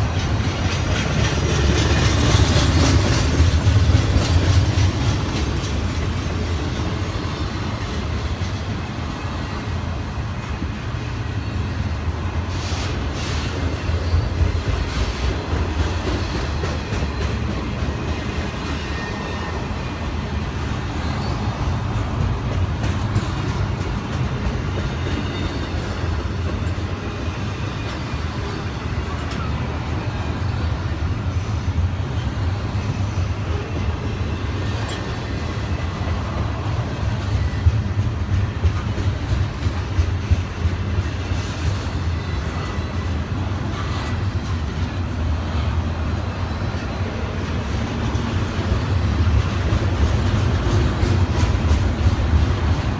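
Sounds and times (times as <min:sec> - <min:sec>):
rail joint clicks: 0:00.0 - 0:52.9
train wheels rumbling on rails: 0:00.0 - 0:52.9.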